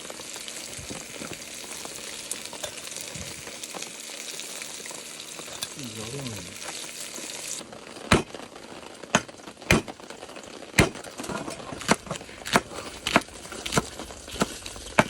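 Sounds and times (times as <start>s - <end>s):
cleaver chopping on cutting board: 8.1s - 8.3s, 9.2s - 9.9s, 10.8s - 11.0s, 11.8s - 14.6s.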